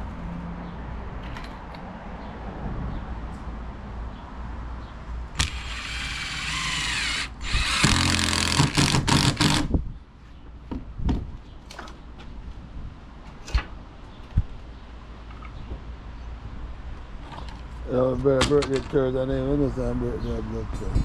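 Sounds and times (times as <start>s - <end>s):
power drill driving screws: 5.4s - 9.7s.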